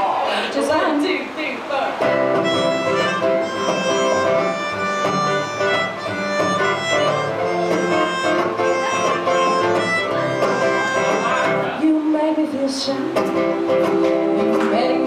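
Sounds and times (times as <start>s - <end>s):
plucked strings: 2.0s - 11.8s, 12.8s - 15.0s
bowed string melody: 2.1s - 11.8s.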